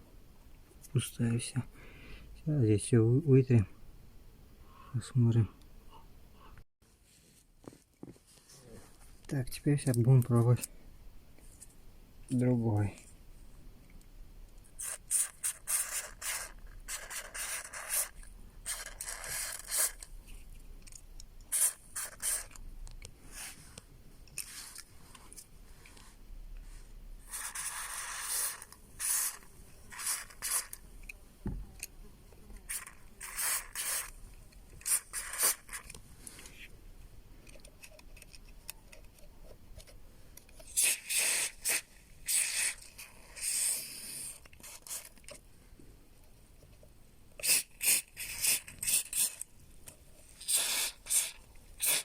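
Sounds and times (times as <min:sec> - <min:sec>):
aerosol spray hissing: 0:14.8 - 0:20.0, 0:21.5 - 0:22.6, 0:27.3 - 0:30.8, 0:32.7 - 0:34.2, 0:34.8 - 0:35.8, 0:40.7 - 0:45.1, 0:47.4 - 0:49.4, 0:50.4 - 0:52.0.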